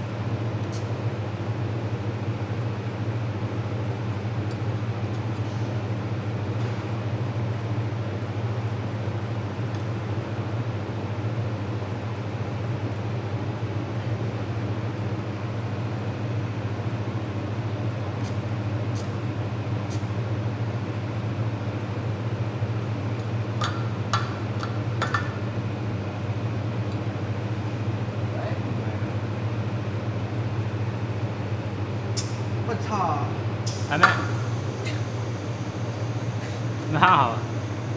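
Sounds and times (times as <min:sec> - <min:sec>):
welding machine humming: 0:33.6 - 0:37.9.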